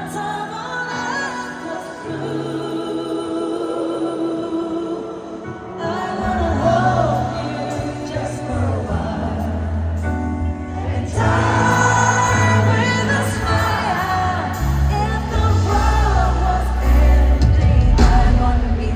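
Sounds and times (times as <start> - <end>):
live pop band with heavy bass: 5.7 - 18.9.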